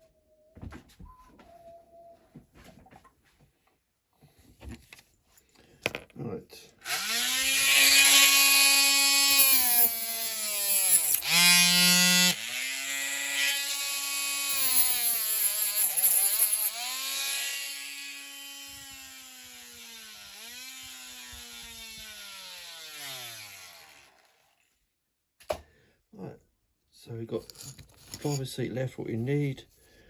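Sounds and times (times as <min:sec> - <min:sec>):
power tool motor whining: 0:06.8 - 0:24.4.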